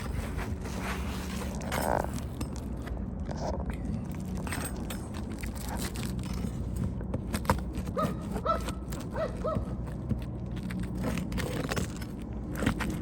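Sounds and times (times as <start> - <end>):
roofing tool scraping shingles: 0.0 - 2.7, 10.1 - 13.0.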